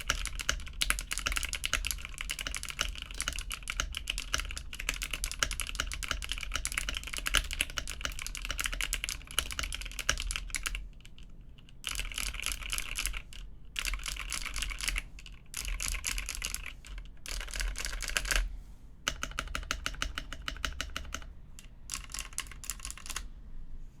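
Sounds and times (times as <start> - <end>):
mechanical keyboard typing: 0.0 - 23.3.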